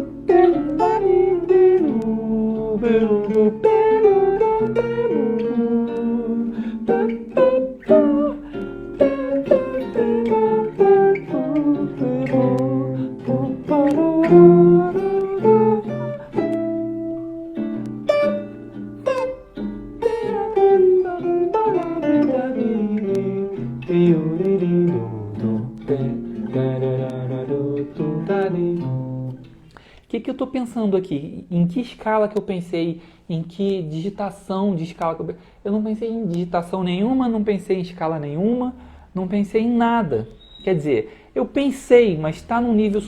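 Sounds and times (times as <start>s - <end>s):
jazz guitar plucked notes: 0.0s - 29.7s.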